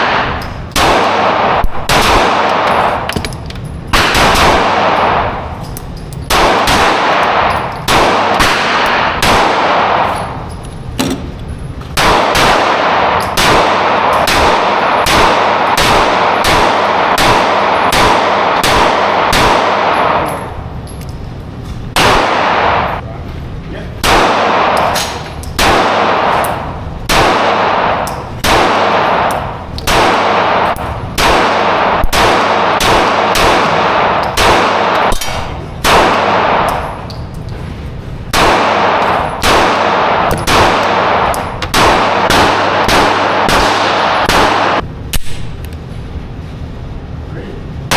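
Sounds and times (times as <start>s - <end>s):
rapid gunfire: 0.0s - 3.1s, 4.0s - 5.4s, 6.3s - 10.1s, 12.0s - 20.3s, 27.1s - 36.7s, 38.3s - 45.5s.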